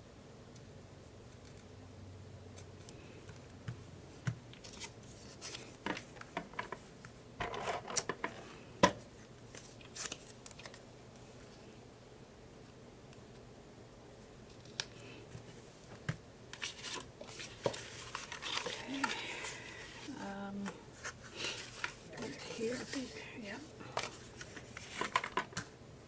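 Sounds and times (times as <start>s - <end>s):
paper rustling: 4.6s - 6.8s, 9.2s - 10.8s, 16.6s - 25.7s.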